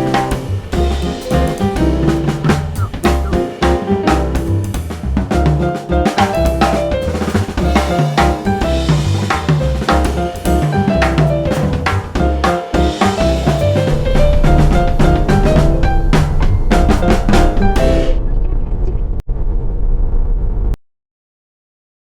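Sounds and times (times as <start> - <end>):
drum kit beat: 0.0 - 18.2
bass line: 0.0 - 18.9
melody notes: 0.9 - 4.7.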